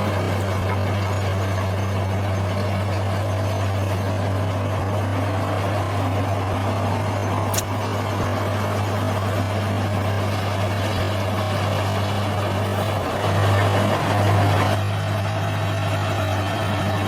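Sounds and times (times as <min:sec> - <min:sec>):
bulldozer diesel engine running: 0:00.0 - 0:17.0
short sharp click: 0:07.5 - 0:07.7.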